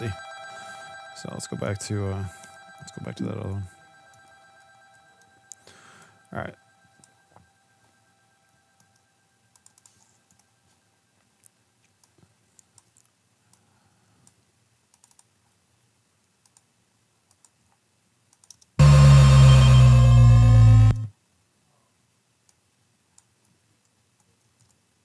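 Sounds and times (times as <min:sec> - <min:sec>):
synthesized sound effect: 0:00.0 - 0:05.8, 0:18.8 - 0:21.1
computer keyboard clicks: 0:14.2 - 0:15.3, 0:18.3 - 0:18.7.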